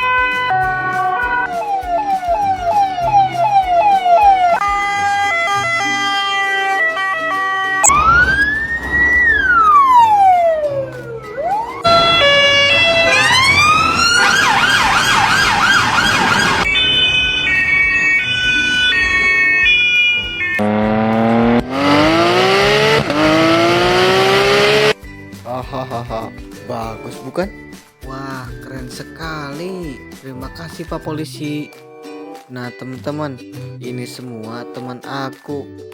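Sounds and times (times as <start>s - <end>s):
electronic police siren: 0.0s - 25.0s.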